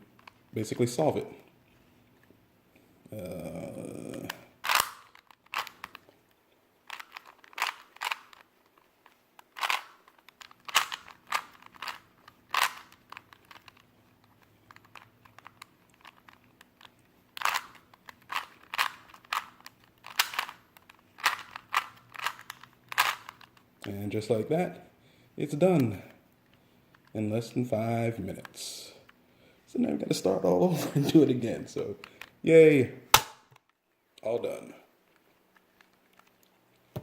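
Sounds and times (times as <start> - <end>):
puzzle cube twisting clicks: 4.0 - 23.9.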